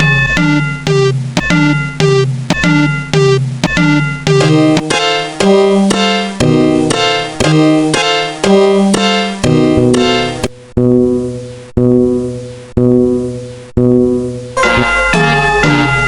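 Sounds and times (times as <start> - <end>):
keyboard melody: 0.0 - 10.5, 14.6 - 16.0.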